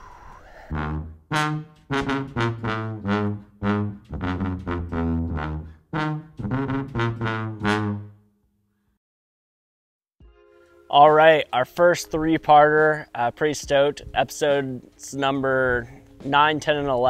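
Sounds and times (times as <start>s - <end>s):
jazzy brass music: 0.7s - 8.2s.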